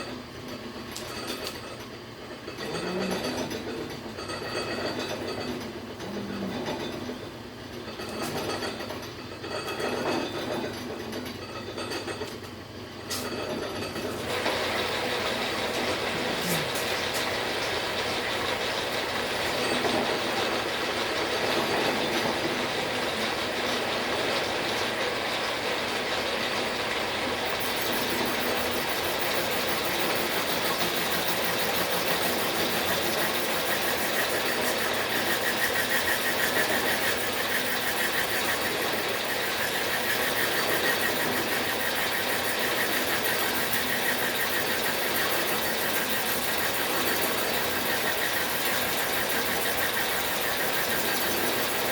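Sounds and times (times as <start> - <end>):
lathe cutting metal: 14.2 - 51.9.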